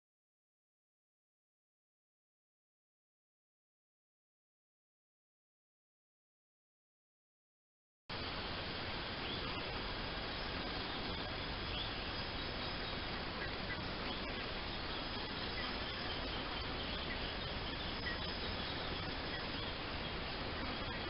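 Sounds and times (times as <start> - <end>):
outdoor background hiss: 8.1 - 21.0
distant bird chirps: 9.1 - 21.0.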